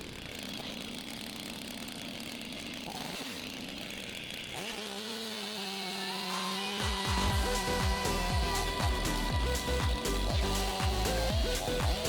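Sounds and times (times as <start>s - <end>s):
chainsaw cutting through log: 0.0s - 12.0s
background music: 7.1s - 12.0s.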